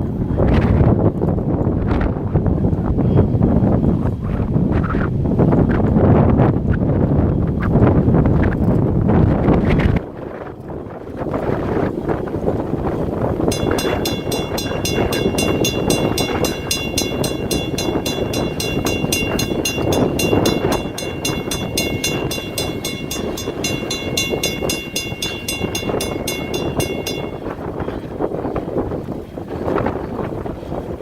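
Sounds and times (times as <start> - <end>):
wind noise: 0.0 - 31.0
bell ringing: 13.5 - 27.6.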